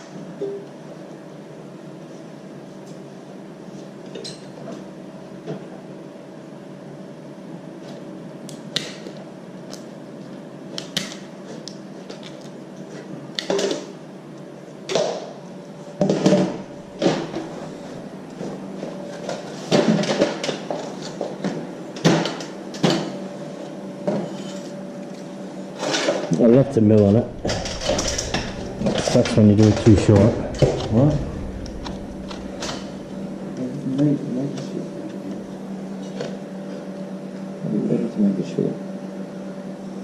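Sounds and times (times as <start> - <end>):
steady hum: 16.0 - 19.4, 26.3 - 37.2.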